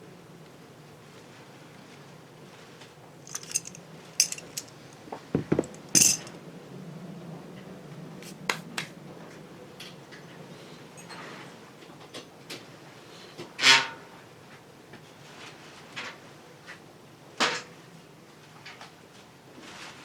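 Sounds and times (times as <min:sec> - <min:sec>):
metal tools clinking: 0:03.3 - 0:06.4.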